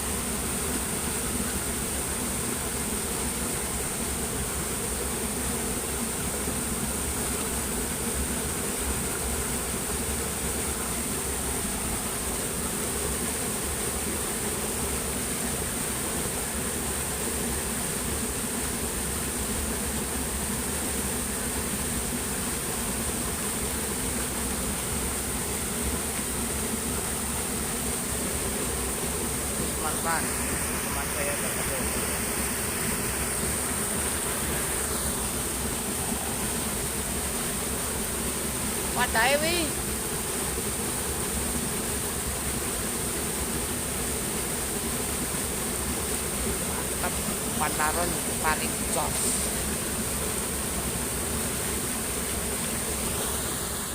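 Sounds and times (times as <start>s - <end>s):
high-pitched hiss or buzz: 0.0s - 53.9s
stream water rushing: 0.0s - 53.9s
high-pitched insect chorus: 20.6s - 52.7s.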